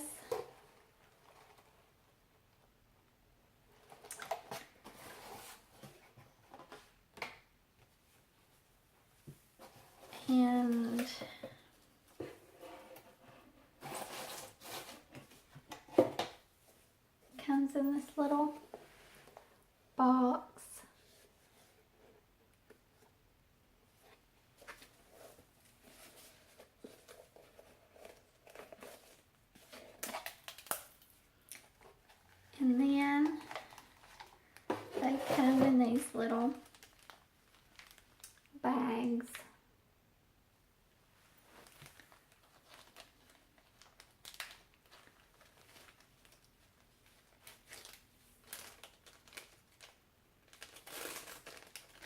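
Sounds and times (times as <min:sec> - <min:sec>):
packaging rustling: 0:24.6 - 0:32.4, 0:33.2 - 0:35.8, 0:36.5 - 0:38.4, 0:41.5 - 0:52.0
jewelry bags crinkling: 0:33.0 - 0:35.6, 0:36.4 - 0:38.5, 0:41.6 - 0:52.0
sharp crinkles: 0:36.6 - 0:38.4, 0:47.1 - 0:52.0.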